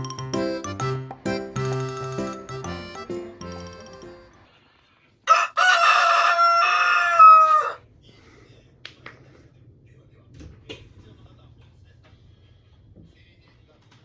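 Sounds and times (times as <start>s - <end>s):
rooster crowing: 5.3s - 7.8s.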